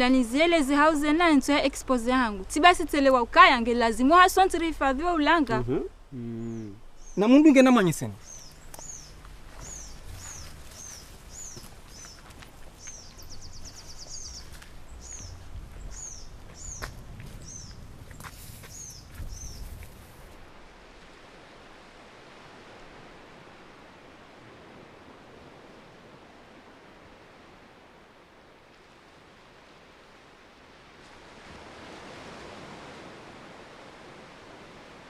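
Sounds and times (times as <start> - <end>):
small birds chirping: 6.1 - 20.0.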